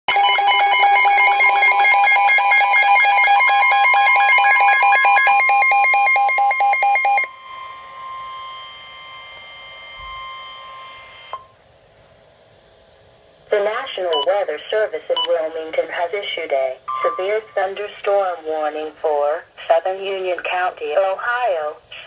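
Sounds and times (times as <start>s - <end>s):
steady alert tone: 0.1s - 8.4s, 16.9s - 17.6s
electronic alarm pulsing tones: 0.1s - 11.6s, 16.9s - 17.6s.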